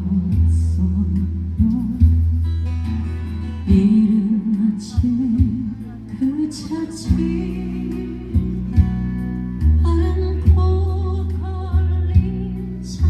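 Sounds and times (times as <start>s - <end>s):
guitar accompaniment: 0.0s - 13.0s
person singing: 3.3s - 13.0s.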